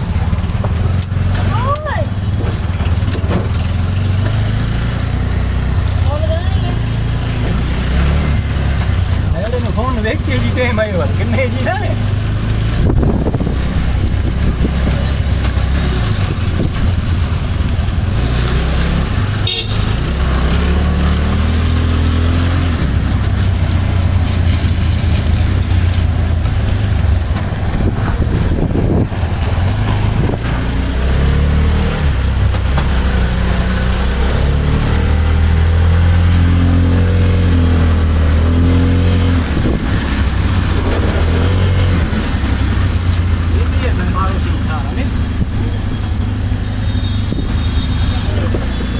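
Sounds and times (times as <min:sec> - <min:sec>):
vehicle engine rumbling: 0:00.0 - 0:48.9.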